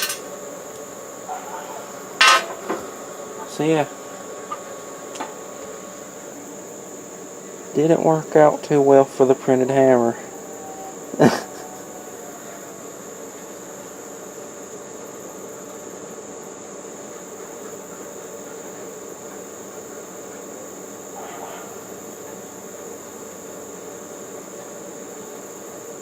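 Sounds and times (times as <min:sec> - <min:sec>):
insects chorus: 0:00.0 - 0:26.0.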